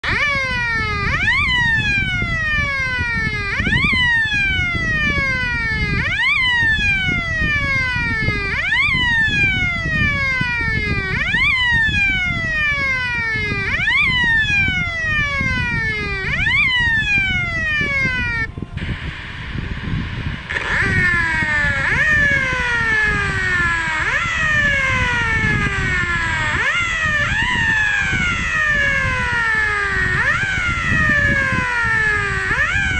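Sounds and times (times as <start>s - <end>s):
emergency siren wailing: 0.0s - 32.9s
low rumble: 16.2s - 32.4s.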